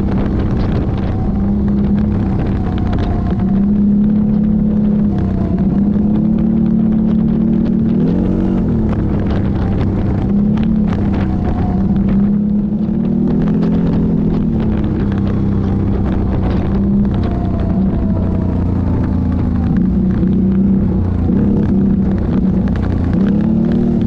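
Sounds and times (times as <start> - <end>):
atv engine running: 0.0 - 24.0.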